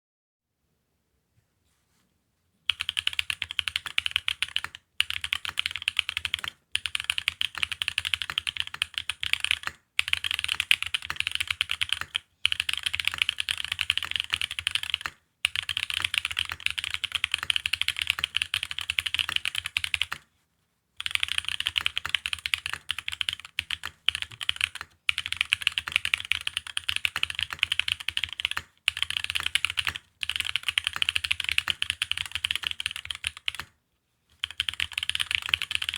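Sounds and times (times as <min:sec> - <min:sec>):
mechanical keyboard typing: 0:02.7 - 0:20.3, 0:21.0 - 0:33.7, 0:34.4 - 0:35.9.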